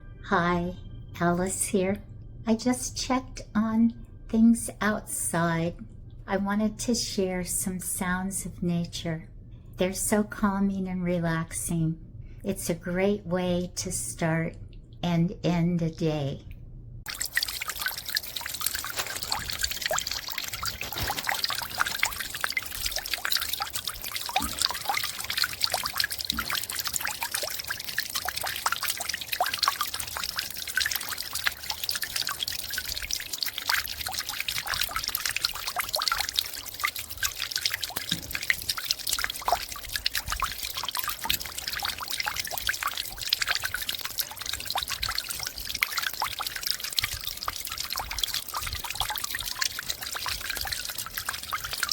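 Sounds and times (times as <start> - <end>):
meltwater trickling and pouring: 17.1 - 51.9
water dripping and splashing: 17.1 - 51.9.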